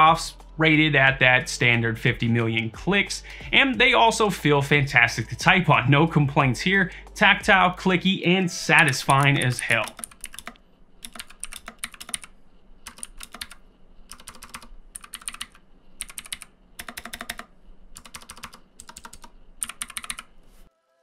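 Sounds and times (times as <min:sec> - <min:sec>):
mechanical keyboard key clicks: 0:09.2 - 0:12.3, 0:12.9 - 0:20.3.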